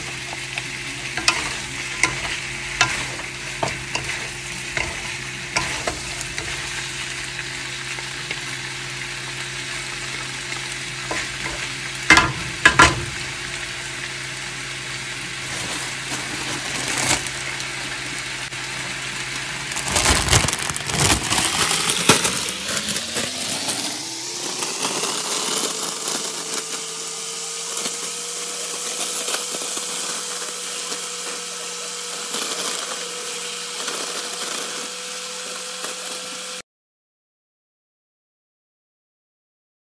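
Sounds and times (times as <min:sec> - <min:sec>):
stirring: 0:00.0 - 0:08.5
whine and steady hum: 0:00.0 - 0:21.3
food sizzling in a pan: 0:00.0 - 0:36.6.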